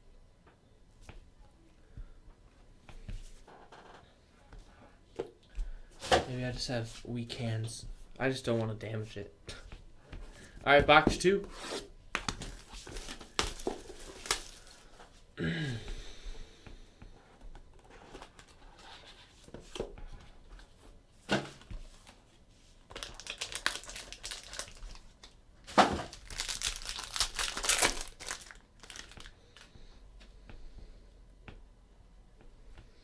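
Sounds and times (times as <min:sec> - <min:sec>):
plastic packaging crinkling: 0:12.2 - 0:15.2, 0:22.8 - 0:29.8.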